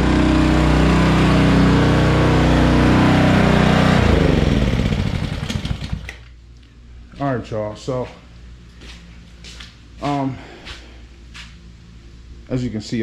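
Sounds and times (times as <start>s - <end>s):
pressure washer engine running: 0.0s - 6.1s.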